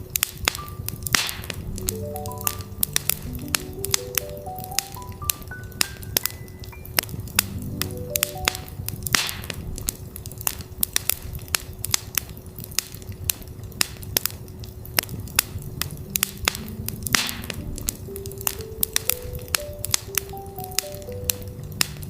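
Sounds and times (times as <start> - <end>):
campfire crackling and popping: 0.0 - 22.0
fire hissing flare: 0.0 - 22.0.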